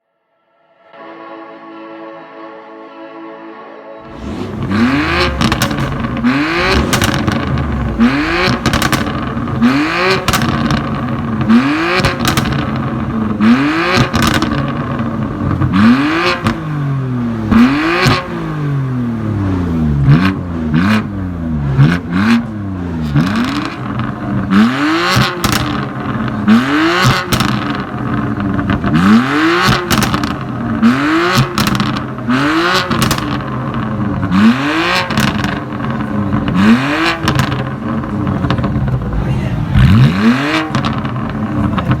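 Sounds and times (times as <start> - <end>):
car engine revving: 4.0 - 42.0
exhaust pops and crackles: 4.8 - 16.6, 21.7 - 42.0.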